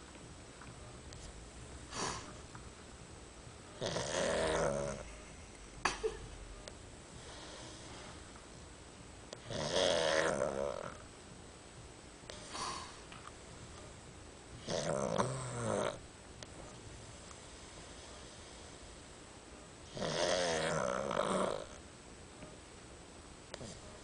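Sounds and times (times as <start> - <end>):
pet snoring: 3.8 - 5.2, 7.2 - 8.2, 9.4 - 11.1, 12.3 - 13.0, 14.6 - 16.0, 19.8 - 21.8, 23.6 - 23.8
soft breaths: 7.1 - 8.7, 12.3 - 13.3, 16.9 - 19.3.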